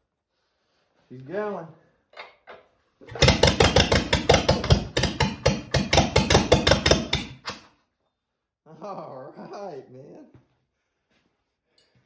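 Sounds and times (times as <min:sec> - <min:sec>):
engine exhaust pops: 0:03.1 - 0:07.6.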